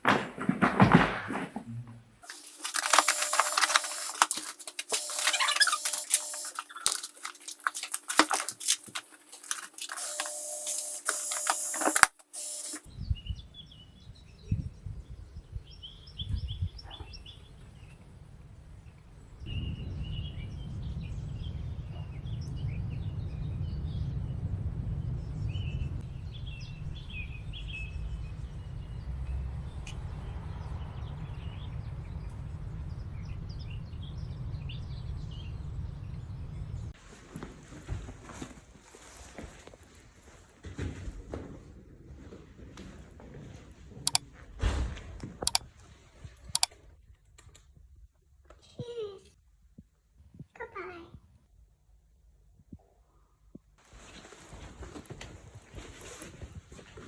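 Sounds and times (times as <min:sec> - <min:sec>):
sharp clicks and rustling: 0:02.2 - 0:12.9, 0:45.4 - 0:45.7, 0:46.5 - 0:46.8.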